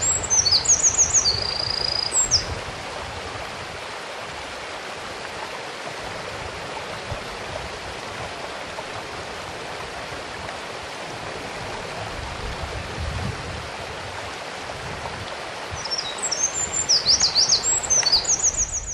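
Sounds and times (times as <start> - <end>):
wren singing trills: 0.0 - 2.5, 15.8 - 18.9
mountain stream rushing: 0.0 - 18.9.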